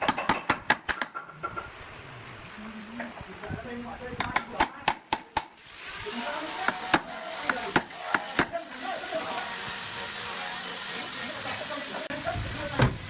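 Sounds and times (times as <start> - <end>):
steady hiss: 5.6 - 13.0.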